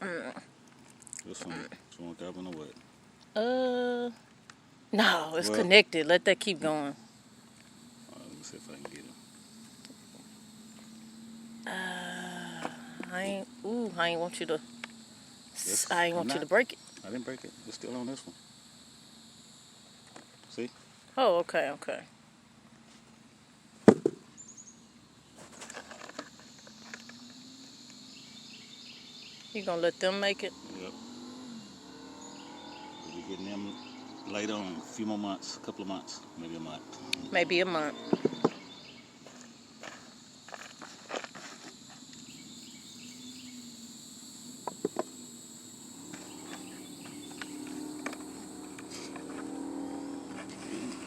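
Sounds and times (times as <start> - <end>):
insects chirring: 0.0 - 51.0
sharp knock: 23.8 - 24.2.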